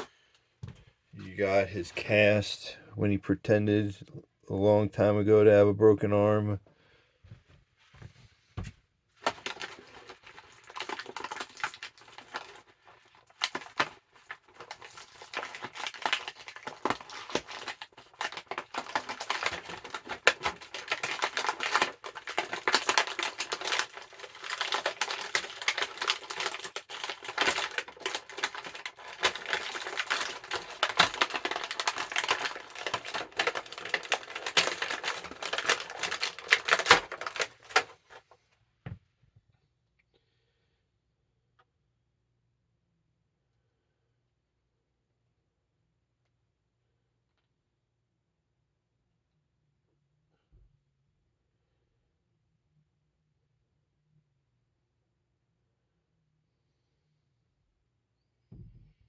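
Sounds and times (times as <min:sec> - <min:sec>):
plastic packaging crackling: 0:09.2 - 0:38.3.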